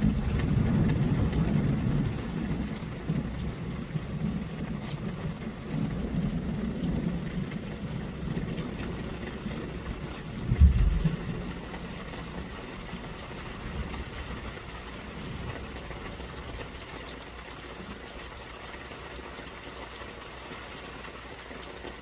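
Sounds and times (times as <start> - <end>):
thunder rumbling: 0.0 - 16.9
rain on tarps: 0.0 - 22.0.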